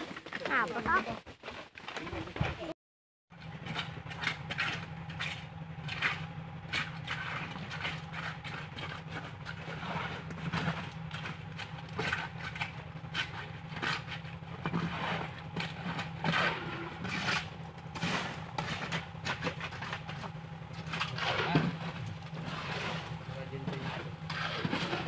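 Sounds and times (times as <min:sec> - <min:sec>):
engine running: 0:03.3 - 0:25.0
concrete scraping and knocking: 0:06.8 - 0:25.0.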